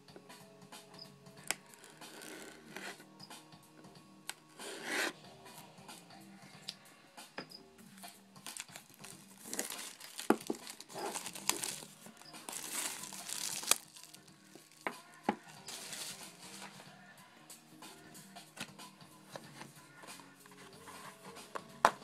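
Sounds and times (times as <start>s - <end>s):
plastic wrapping crinkling and tearing: 8.4s - 14.9s, 15.6s - 16.8s.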